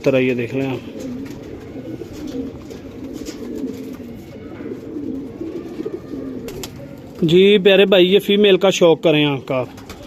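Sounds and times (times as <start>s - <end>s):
pigeons cooing: 0.0s - 8.5s, 9.3s - 10.0s.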